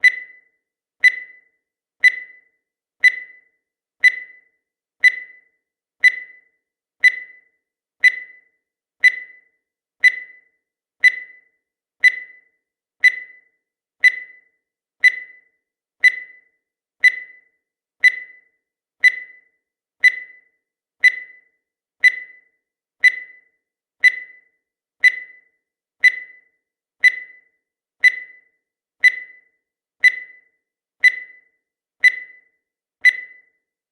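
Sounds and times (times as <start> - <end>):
high-pitched timer ticks: 0.0 - 33.9.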